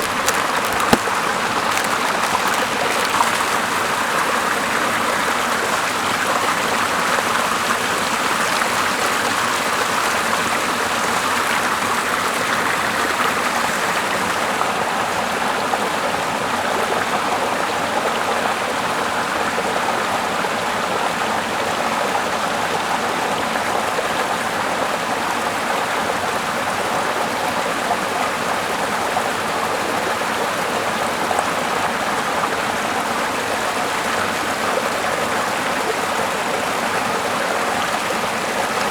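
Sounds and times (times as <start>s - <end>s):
running water rushing: 0.0s - 8.2s.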